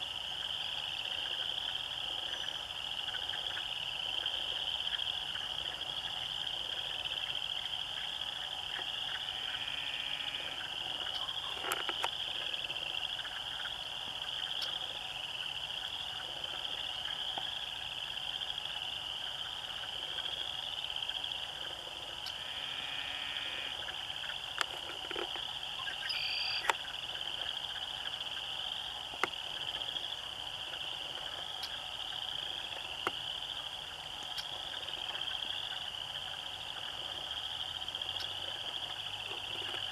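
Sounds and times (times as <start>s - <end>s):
frogs chorus trilling: 0.0s - 39.9s
bird calls: 24.6s - 26.9s.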